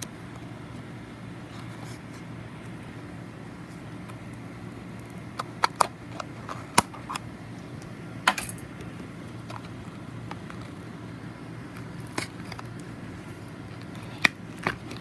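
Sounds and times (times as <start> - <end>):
low background hum: 0.0 - 15.0
small items and packaging clattering: 5.3 - 15.0.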